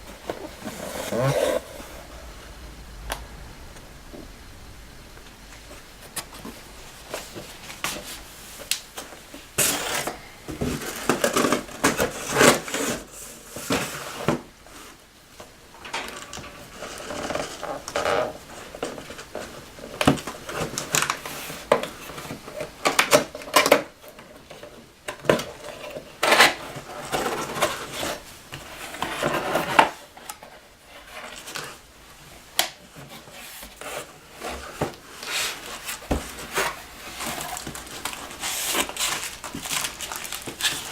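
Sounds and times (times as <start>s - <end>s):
wrapping rustling: 32.9s - 40.9s.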